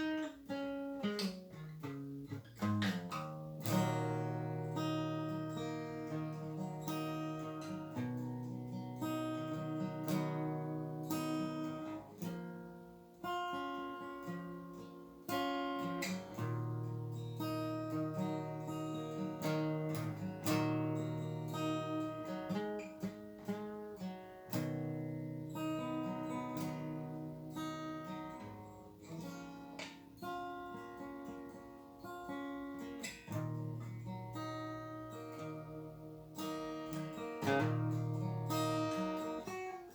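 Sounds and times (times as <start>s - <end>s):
acoustic guitar playing: 0.0s - 39.9s.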